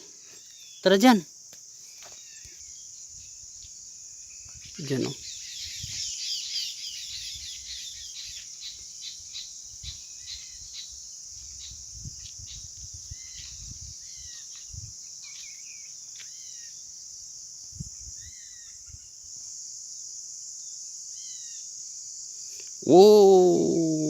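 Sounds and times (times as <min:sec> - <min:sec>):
shrill insect chorus: 0:00.0 - 0:24.0
bird chirps: 0:04.3 - 0:11.0.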